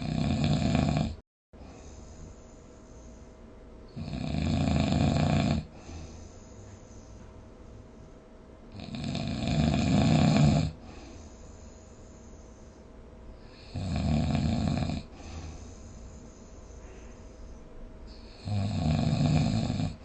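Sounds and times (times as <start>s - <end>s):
person snoring: 0.0s - 1.2s, 3.9s - 6.2s, 8.7s - 11.4s, 13.4s - 16.0s, 18.1s - 20.0s.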